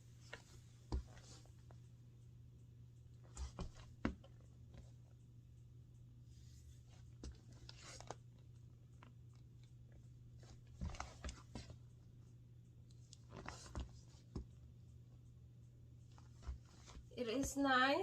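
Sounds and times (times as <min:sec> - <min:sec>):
steady low hum: 0:00.0 - 0:18.0
handling rustles and knocks: 0:00.2 - 0:01.7, 0:03.2 - 0:04.9, 0:10.4 - 0:11.9, 0:13.1 - 0:14.6, 0:16.1 - 0:17.1.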